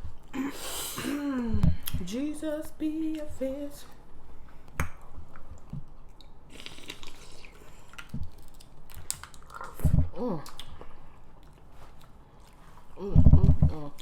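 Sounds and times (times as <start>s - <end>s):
close chewing and mouth sounds: 4.4s - 14.0s.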